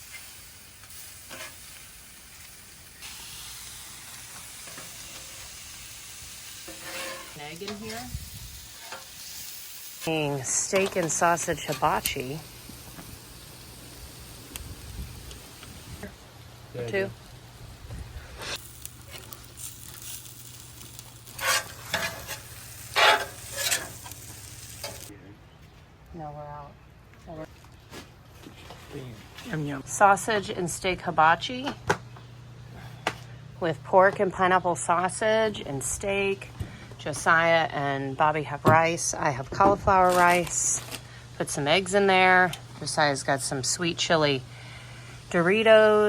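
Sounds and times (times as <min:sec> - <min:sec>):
meat sizzling: 0:00.0 - 0:25.1.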